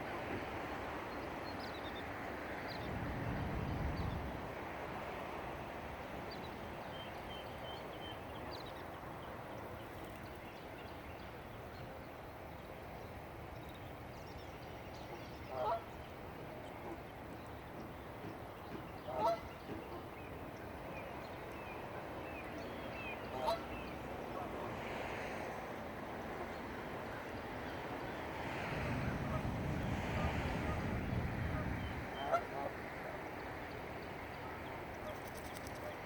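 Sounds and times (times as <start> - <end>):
geese honking: 19.1 - 19.4, 23.3 - 23.7, 31.5 - 32.8.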